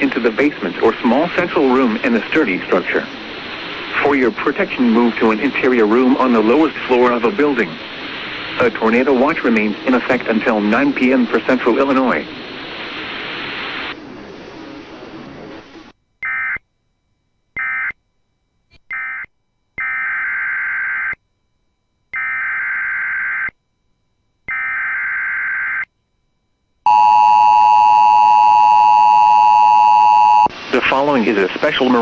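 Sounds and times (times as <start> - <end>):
steady attention tone: 26.1 - 30.5.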